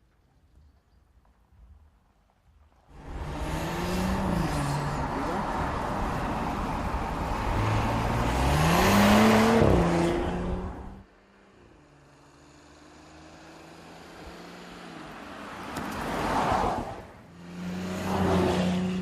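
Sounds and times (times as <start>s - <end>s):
tyre and road noise: 0.0s - 19.0s
car engine revving: 3.0s - 11.0s.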